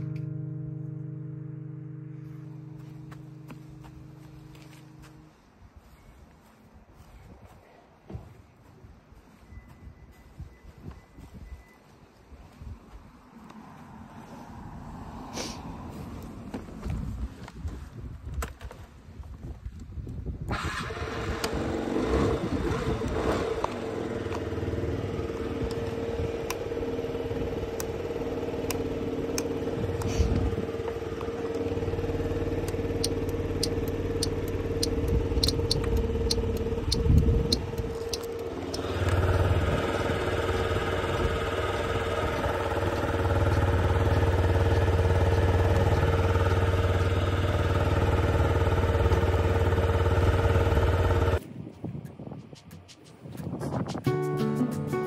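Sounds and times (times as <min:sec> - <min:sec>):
scooter engine running: 0:00.0 - 0:05.9, 0:20.5 - 0:51.4
light clicks: 0:32.6 - 0:39.2.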